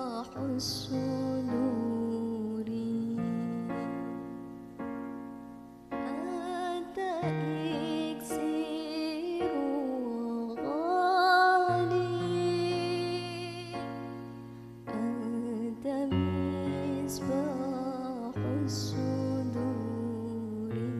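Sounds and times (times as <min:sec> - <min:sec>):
person singing with vibrato: 0:00.0 - 0:04.4, 0:05.9 - 0:20.9.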